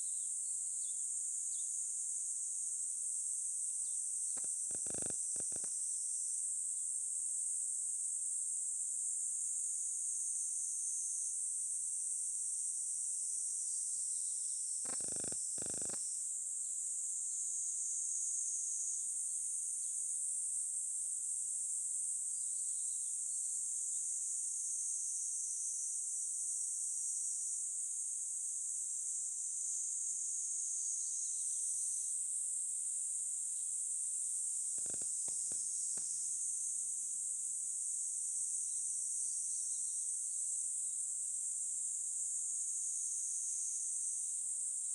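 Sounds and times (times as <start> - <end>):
insect chorus chirring: 3.6 - 5.9, 14.2 - 16.2, 33.5 - 36.7.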